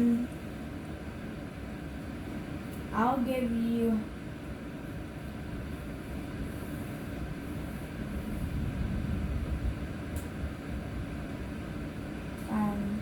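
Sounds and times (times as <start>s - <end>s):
low rumbling noise: 0.0s - 13.0s.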